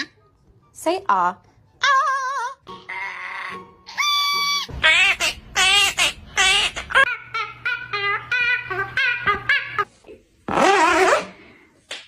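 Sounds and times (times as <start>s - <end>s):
parrot laugh-like calls: 2.9s - 9.9s.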